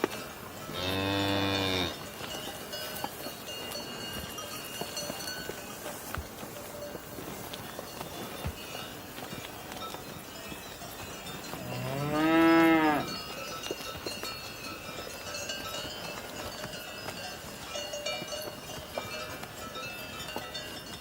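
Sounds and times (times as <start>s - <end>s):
cow mooing: 0.7s - 2.0s, 11.6s - 13.1s.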